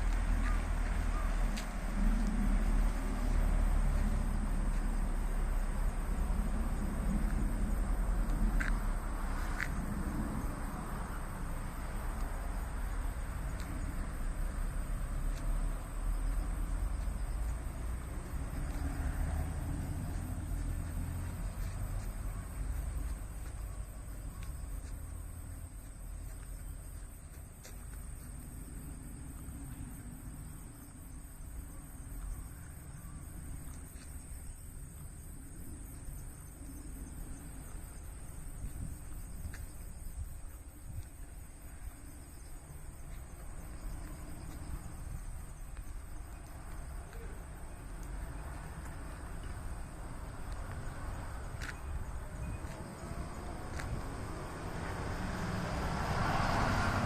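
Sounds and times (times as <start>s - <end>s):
low rumble: 0.0s - 26.3s
insects chirping: 0.0s - 57.0s.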